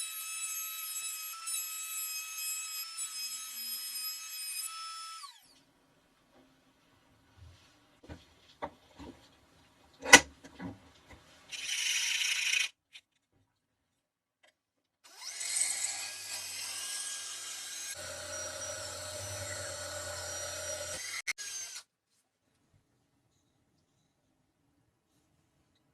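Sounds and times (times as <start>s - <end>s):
power tool cutting wood: 15.1s - 21.8s.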